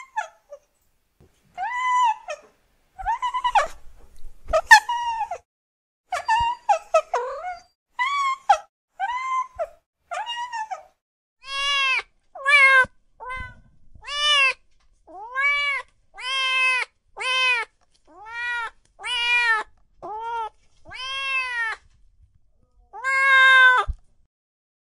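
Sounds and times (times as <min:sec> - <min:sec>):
cat meowing: 0:06.2 - 0:21.8, 0:22.9 - 0:23.9.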